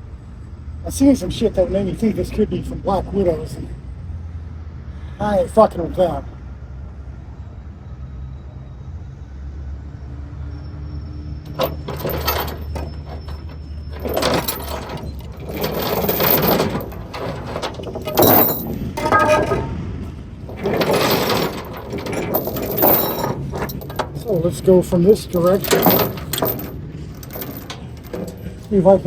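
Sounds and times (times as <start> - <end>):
metal chain rattling and clanking: 11.4 - 29.0.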